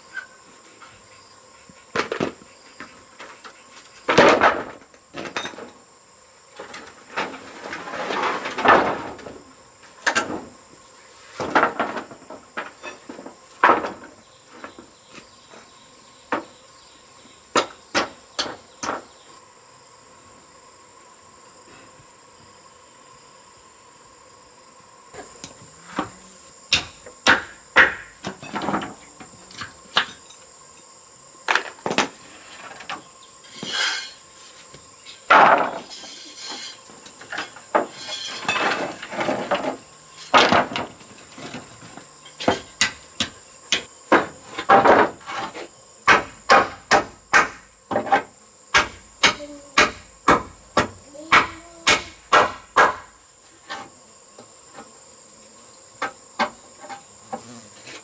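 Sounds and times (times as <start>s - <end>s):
insects droning: 0.0s - 58.0s
scraping sounds: 7.2s - 9.2s, 32.1s - 42.8s
hammering knocks: 25.2s - 30.2s, 46.0s - 53.1s.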